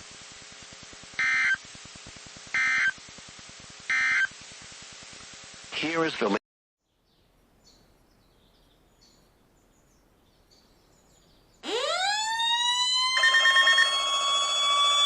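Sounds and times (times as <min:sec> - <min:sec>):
faint hiss: 0:00.0 - 0:11.7
buzzy alarm: 0:01.2 - 0:01.6, 0:02.5 - 0:03.0, 0:03.9 - 0:04.4, 0:11.6 - 0:15.0
siren winding up to a wail: 0:01.2 - 0:01.6, 0:11.6 - 0:15.0.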